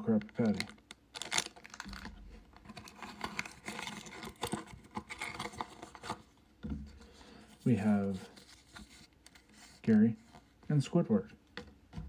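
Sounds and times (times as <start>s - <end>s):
plastic packaging crinkling: 0.0s - 6.2s.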